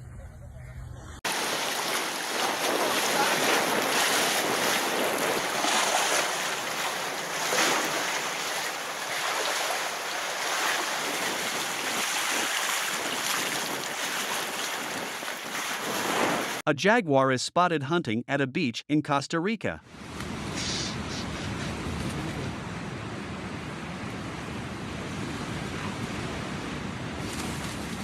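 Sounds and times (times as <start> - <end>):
wind buffeting microphone: 1.1 - 8.6, 10.8 - 16.6
ocean surf washing on beach: 1.3 - 16.6.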